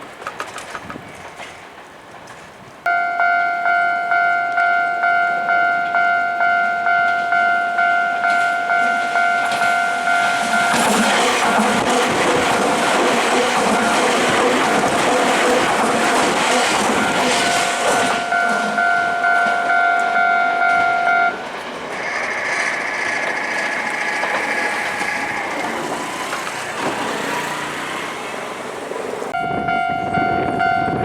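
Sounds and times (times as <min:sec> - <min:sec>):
electric train passing: 0:00.0 - 0:31.0
level crossing bell: 0:02.9 - 0:11.8, 0:17.0 - 0:21.4, 0:29.4 - 0:31.0.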